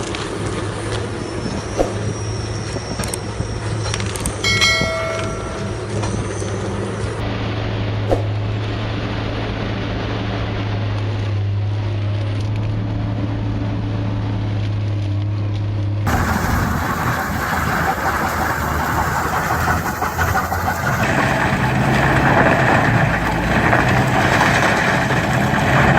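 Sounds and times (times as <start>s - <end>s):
harsh grinding noise: 16.1s - 25.9s
stump grinder engine hum: 16.1s - 25.9s.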